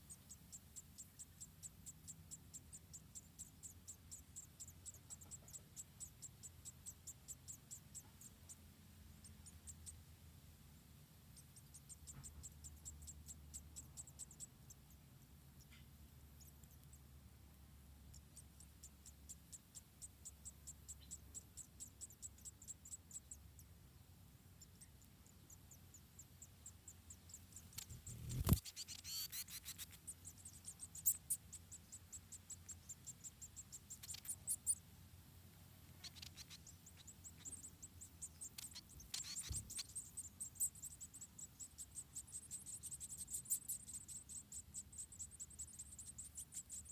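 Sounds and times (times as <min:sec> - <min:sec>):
faint low hum: 0:00.0 - 0:46.9
insect chirping: 0:00.0 - 0:46.9
high squeaky sounds: 0:27.8 - 0:30.0.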